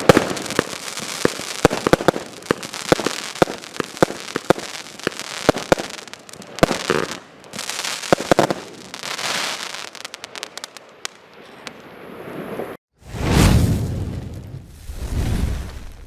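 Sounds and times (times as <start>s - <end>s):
fireworks hissing: 0.0s - 11.7s
firework bangs: 0.0s - 16.0s
firework crackling pops: 0.0s - 16.0s.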